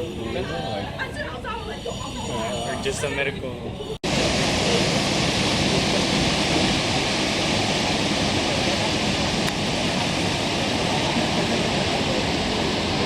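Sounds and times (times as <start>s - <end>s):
waterfall roaring: 4.1s - 13.0s.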